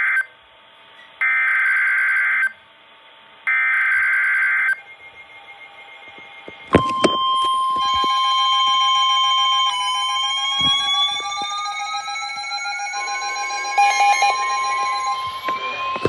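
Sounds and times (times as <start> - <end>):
weather radio alarm tones: 4.5 - 16.0
rapid electronic chirps: 4.6 - 16.0.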